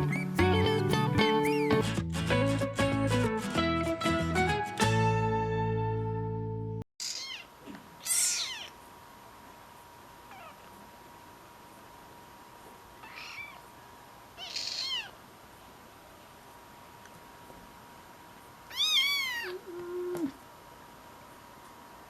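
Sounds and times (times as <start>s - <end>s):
background music: 0.0s - 6.8s
kitten meowing: 7.0s - 8.8s, 13.0s - 13.6s, 14.4s - 15.2s, 18.7s - 20.3s.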